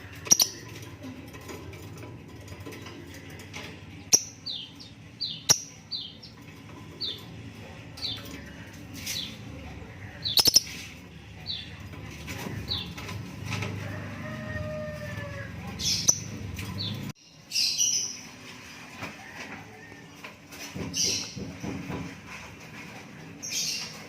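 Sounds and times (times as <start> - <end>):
lovebirds chirping: 0.0 - 1.1, 4.0 - 11.8.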